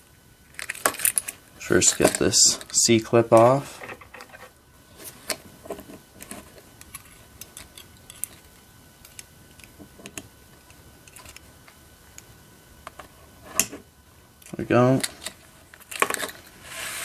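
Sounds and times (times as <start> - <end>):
small metal clicks and scrapes: 6.2 - 11.5.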